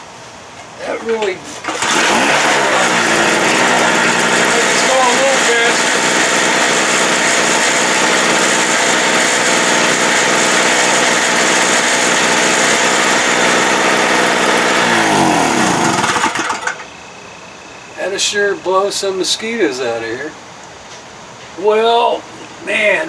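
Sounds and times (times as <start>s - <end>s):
generator engine running: 0.8s - 17.0s.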